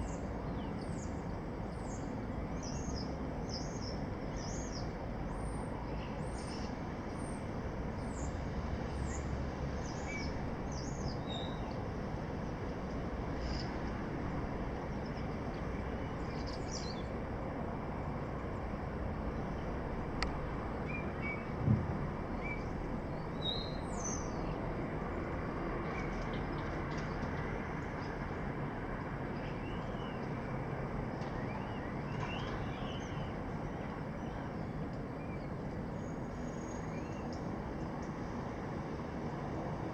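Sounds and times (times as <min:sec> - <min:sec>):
city background hum: 0:00.0 - 0:39.9
low thump: 0:21.6 - 0:22.0.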